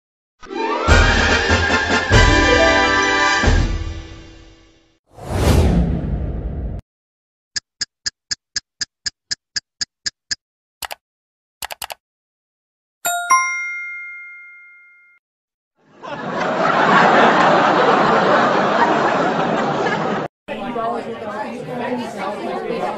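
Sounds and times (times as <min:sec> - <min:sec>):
short clicks: 0:09.8 - 0:11.0, 0:11.6 - 0:12.0
bright bell-like ding: 0:13.1 - 0:15.2
crowd chattering: 0:17.4 - 0:22.9.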